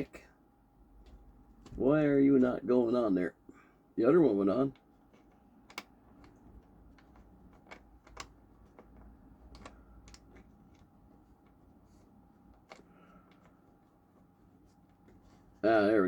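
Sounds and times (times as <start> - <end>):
small clicks and taps of nut: 5.1 - 11.6.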